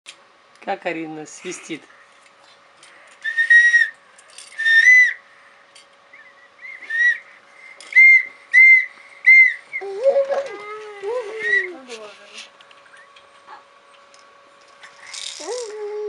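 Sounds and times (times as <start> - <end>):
infant whistling: 3.2 - 5.2, 6.1 - 10.5, 11.4 - 11.8.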